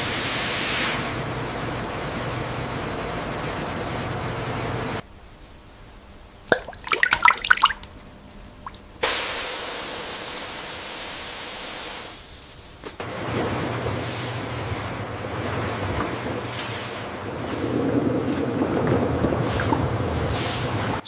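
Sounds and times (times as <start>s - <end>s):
water dripping and splashing: 6.5s - 9.1s.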